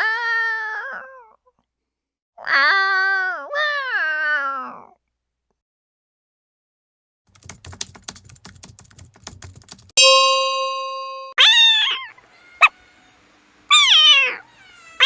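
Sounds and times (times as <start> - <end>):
bell-like ding: 10.0 - 11.4
cat meowing: 11.4 - 13.1, 13.7 - 15.0.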